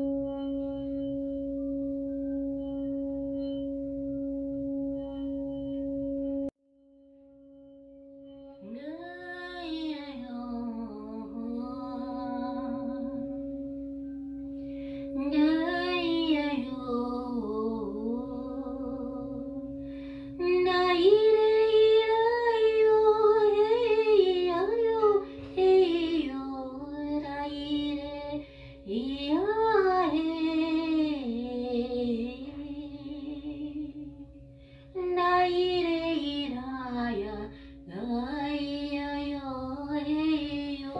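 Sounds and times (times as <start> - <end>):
singing bowl ringing: 0.0 - 40.9
woman singing wordless tones: 8.6 - 40.9.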